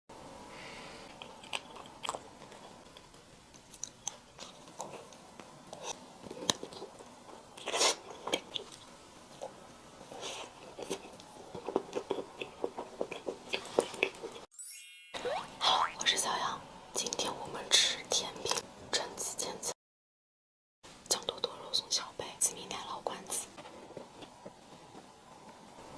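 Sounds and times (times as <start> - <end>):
chocolate crunching while chewed: 1.0 - 9.6, 10.3 - 14.5.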